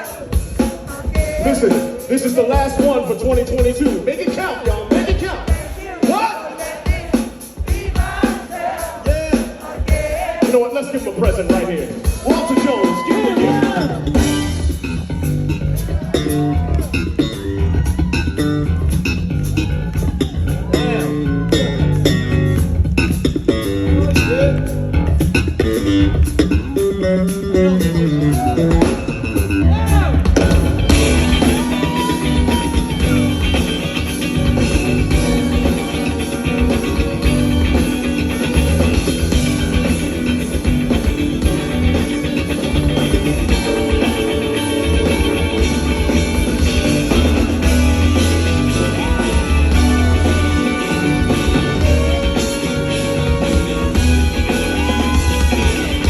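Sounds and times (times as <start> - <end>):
bass line: 0.0 - 5.9, 11.2 - 56.0
funk band playing: 0.0 - 56.0
electric guitar: 12.0 - 56.0.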